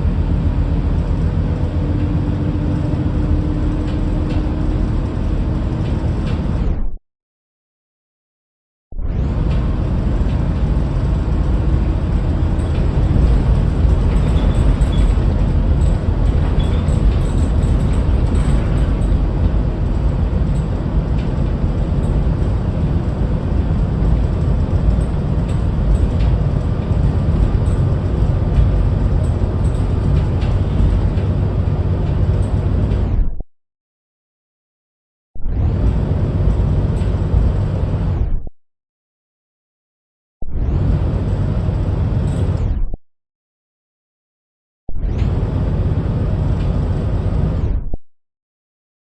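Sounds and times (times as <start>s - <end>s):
vehicle road and engine rumble: 0.0s - 7.0s, 9.0s - 33.3s, 35.5s - 38.4s, 40.6s - 42.8s, 45.0s - 47.8s.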